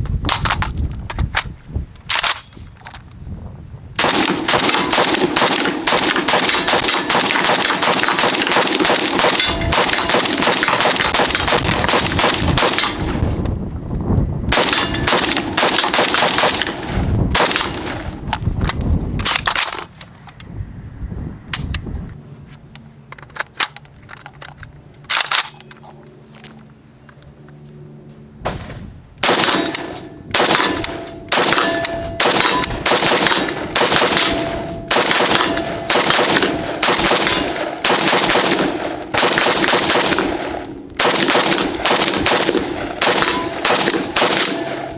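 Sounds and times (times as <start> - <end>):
rifle gunshots: 4.0 - 13.4, 14.5 - 18.2, 28.5 - 44.9.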